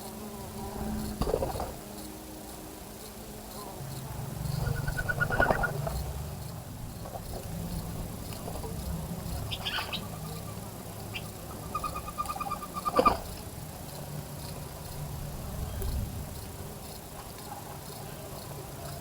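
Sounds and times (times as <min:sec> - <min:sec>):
small birds trilling: 0:04.4 - 0:06.6, 0:07.2 - 0:15.0.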